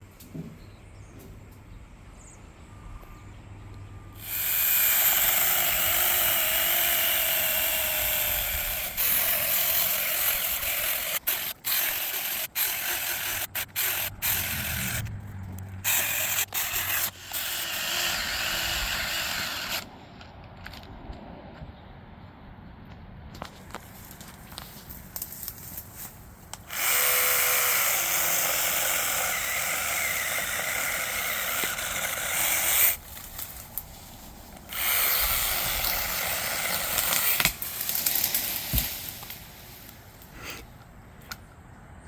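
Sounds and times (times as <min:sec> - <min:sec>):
chainsaw cutting wood: 0:04.2 - 0:19.9, 0:26.6 - 0:33.9, 0:34.6 - 0:40.5.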